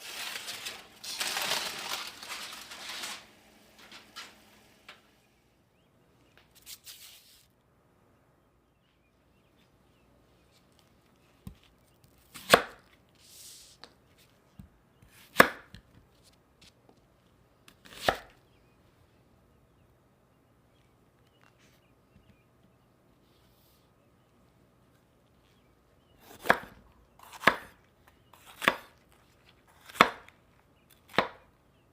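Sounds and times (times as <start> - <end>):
knife chopping on cutting board: 28.4 - 28.9.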